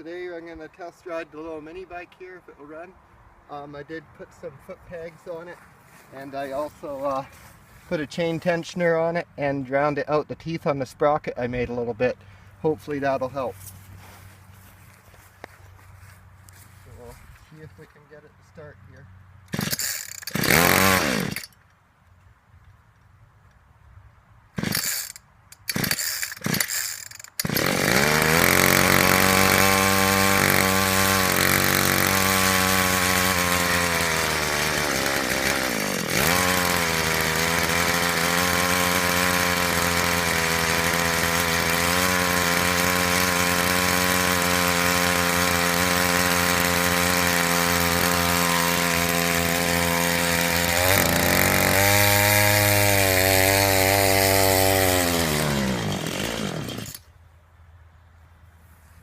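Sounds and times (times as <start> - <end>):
two-stroke engine revving: 19.5 - 21.5, 24.6 - 57.0.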